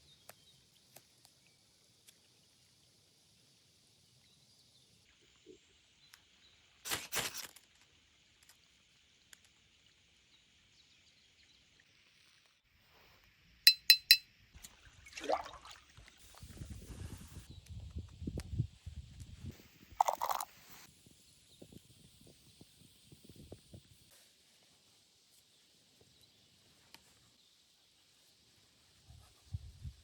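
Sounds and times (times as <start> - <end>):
glass jar clinking: 13.7 - 14.2.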